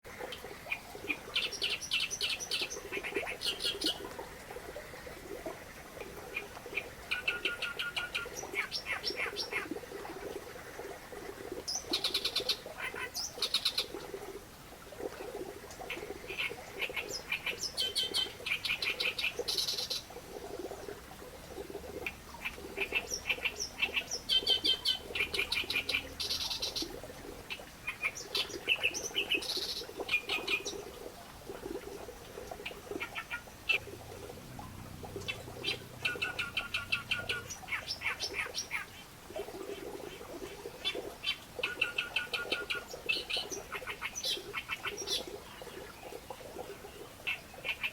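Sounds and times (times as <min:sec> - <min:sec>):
reed warbler singing: 0:35.2 - 0:38.9.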